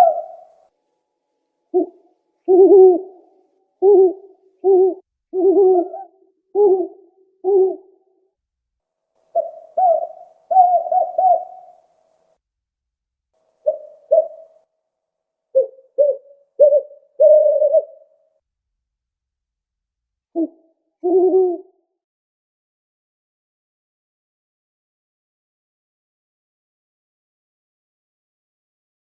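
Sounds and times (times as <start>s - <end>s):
owl hooting: 0.0s - 0.6s, 1.7s - 8.1s, 9.3s - 11.9s, 13.6s - 14.6s, 15.5s - 18.2s, 20.3s - 21.8s.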